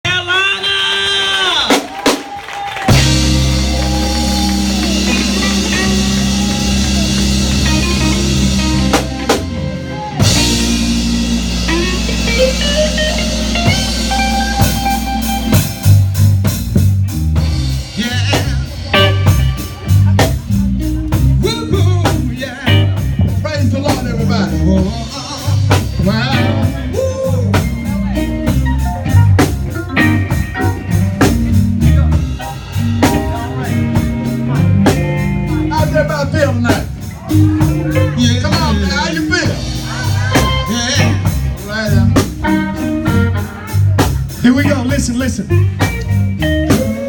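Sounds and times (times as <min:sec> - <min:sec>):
drum kit beat: 0:01.0 - 0:47.0
guitar: 0:02.8 - 0:47.0
low chords: 0:02.8 - 0:47.0
person singing: 0:21.4 - 0:28.0.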